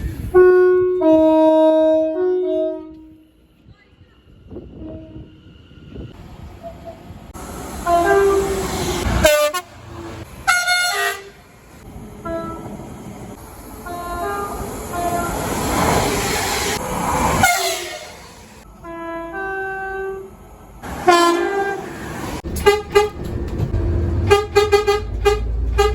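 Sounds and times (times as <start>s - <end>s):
train rumbling on track: 0.0s - 25.9s
train horn blasts: 0.3s - 3.5s, 4.7s - 5.4s, 7.8s - 11.4s, 17.4s - 20.3s, 21.0s - 22.0s, 22.6s - 23.2s, 24.2s - 25.9s.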